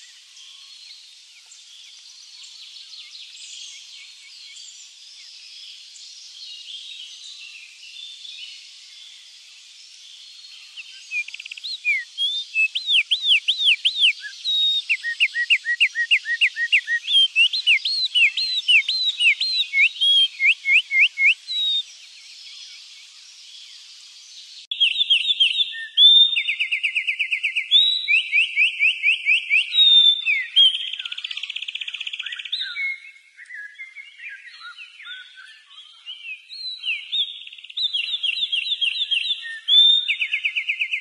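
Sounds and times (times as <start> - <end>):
songbirds whistling: 10.1 - 41.0
bird trills and buzzing trill: 10.5 - 23.8.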